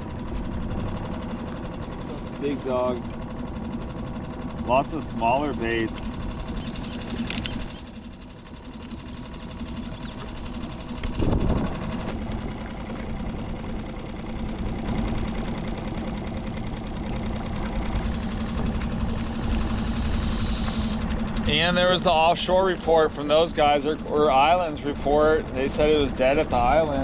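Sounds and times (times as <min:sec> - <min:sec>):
small outboard motor running: 0:00.0 - 0:27.0.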